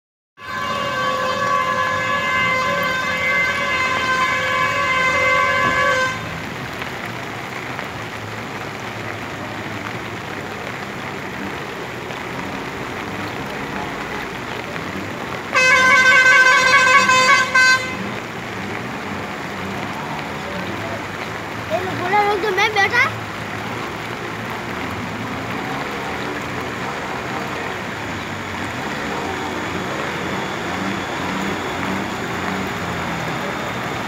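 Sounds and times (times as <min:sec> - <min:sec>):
vehicle horn blast: 0:00.4 - 0:06.4, 0:15.5 - 0:18.3.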